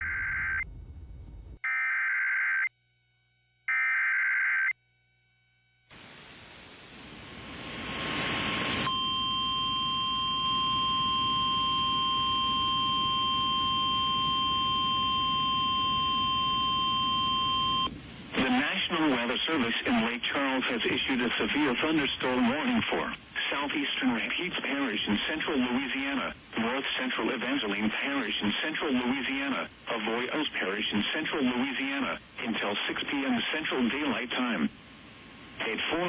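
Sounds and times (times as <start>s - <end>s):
radio hiss: 5.9s - 8.9s, 18.2s - 36.0s.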